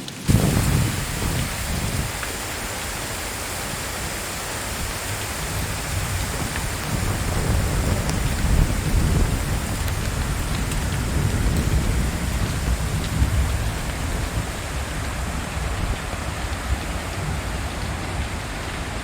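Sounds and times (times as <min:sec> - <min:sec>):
steady rain falling: 0:00.0 - 0:19.0
low rolling thunder: 0:00.2 - 0:19.0.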